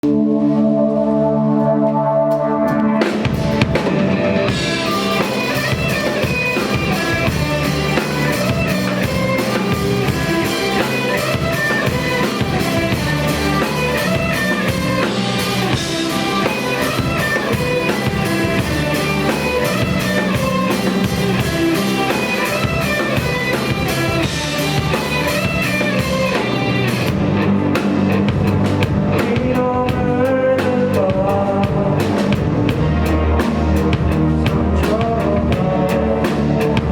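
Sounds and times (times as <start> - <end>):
electric guitar: 0.0 - 36.9
drum kit: 1.6 - 36.9.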